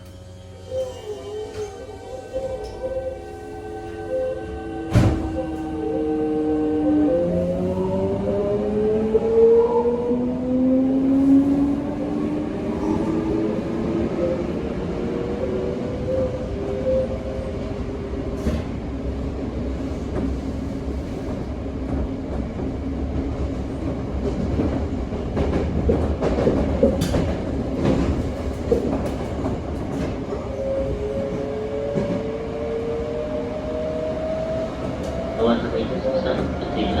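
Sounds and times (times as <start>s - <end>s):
train inverter whine: 27.1s - 37.0s.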